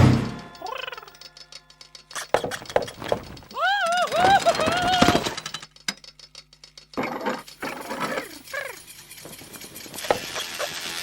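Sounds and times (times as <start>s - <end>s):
fast rattling clatter: 0.0s - 11.0s
cartoon character vocal sounds: 0.6s - 1.1s, 3.6s - 5.2s.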